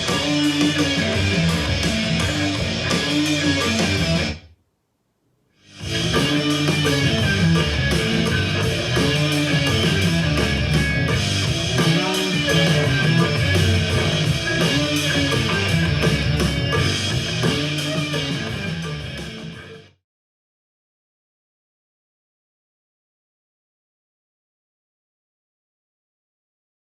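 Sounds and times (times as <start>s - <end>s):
rock music on speaker: 0.0s - 4.5s, 5.6s - 20.0s.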